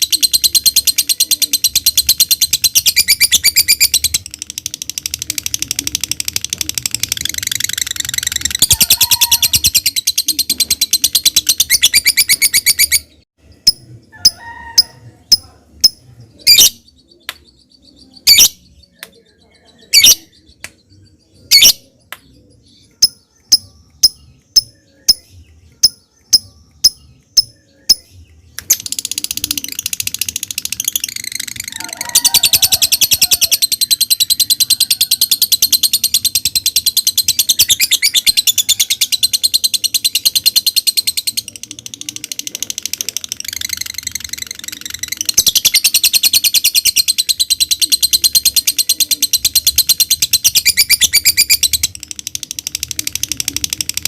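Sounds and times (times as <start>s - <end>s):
lovebird chattering trill: 0.0s - 17.0s, 19.8s - 20.4s, 28.7s - 54.0s
lovebird ticking calls: 22.9s - 54.0s.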